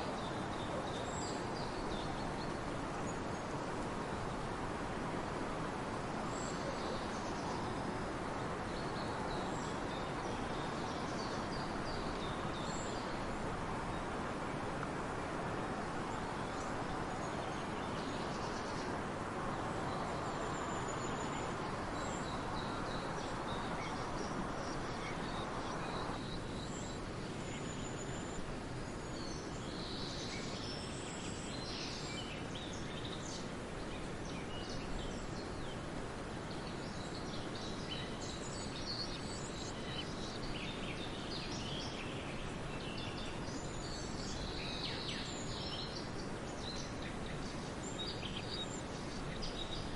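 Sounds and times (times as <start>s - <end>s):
small birds chirping: 15.8s - 49.9s.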